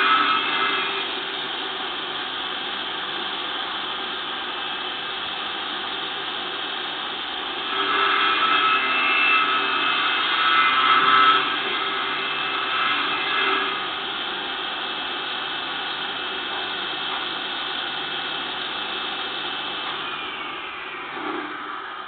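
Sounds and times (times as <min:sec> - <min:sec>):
table saw motor running: 0:00.0 - 0:05.0, 0:07.4 - 0:22.0.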